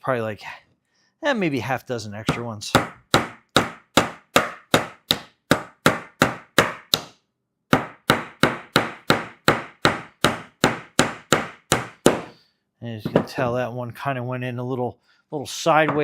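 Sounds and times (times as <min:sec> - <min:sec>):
hammer tapping nails into wood: 0:02.8 - 0:07.1.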